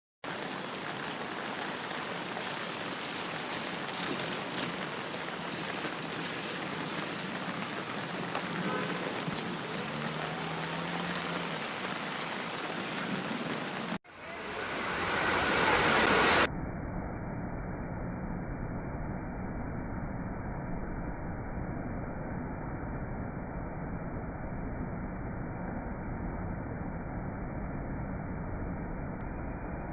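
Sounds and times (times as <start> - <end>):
waterfall rushing: 0.2 - 16.5
loud rushing noise: 8.9 - 16.5.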